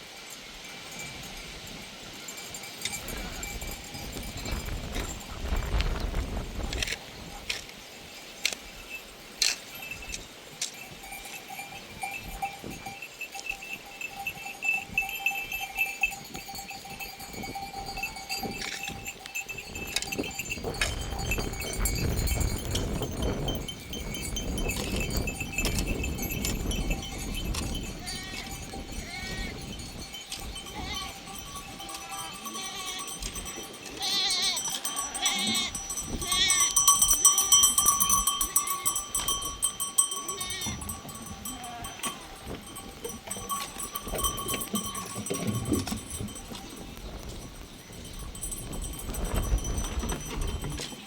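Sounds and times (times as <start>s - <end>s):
animal bells clanking: 0.0s - 51.0s
sheep and goats bleating: 3.0s - 3.8s, 26.9s - 46.8s.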